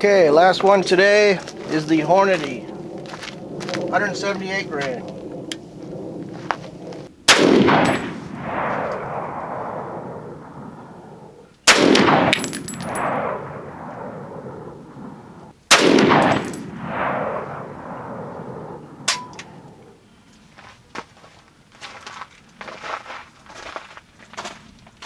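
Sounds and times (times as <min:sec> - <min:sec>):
rifle shots with rolling echo: 0:01.6 - 0:20.0.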